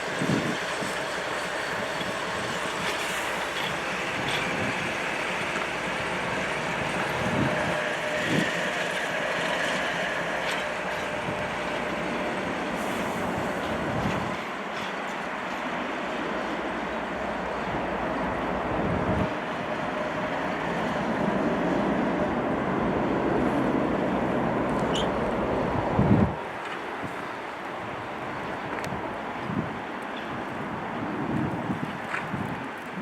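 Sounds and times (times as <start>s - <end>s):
train rushing past: 0.0s - 32.1s.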